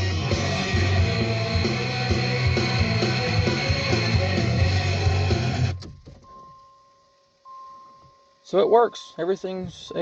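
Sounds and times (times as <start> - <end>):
rock music from car speakers: 0.0 - 8.0.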